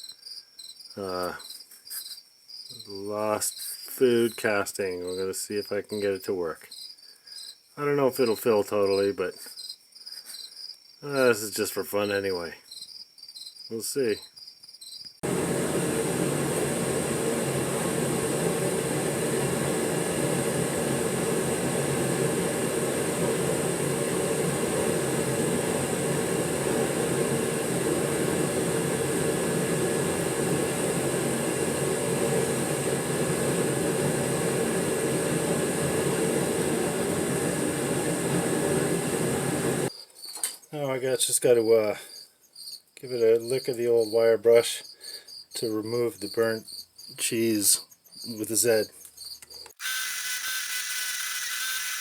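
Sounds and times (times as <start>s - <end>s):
furnace flame rushing: 15.2s - 39.9s.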